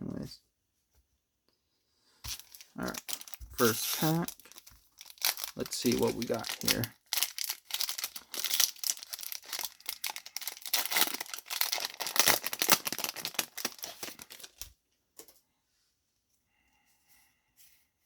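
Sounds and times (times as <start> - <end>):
foil wrapper tearing and crinkling: 2.3 - 14.7.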